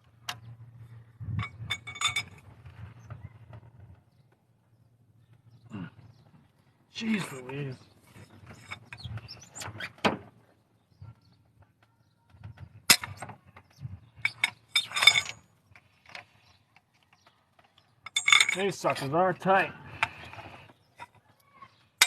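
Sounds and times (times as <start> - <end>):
hand tools clinking on metal: 1.7 - 2.4, 14.2 - 15.4, 17.6 - 20.1.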